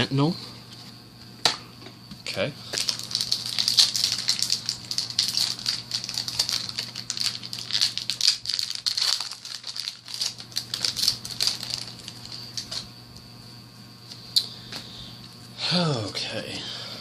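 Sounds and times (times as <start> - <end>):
foil wrapper crinkling: 2.8 - 12.9.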